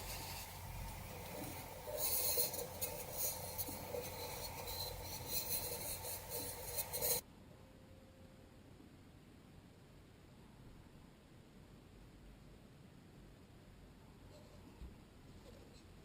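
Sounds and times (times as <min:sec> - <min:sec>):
scratchy rubbing and scraping: 0:00.0 - 0:07.2.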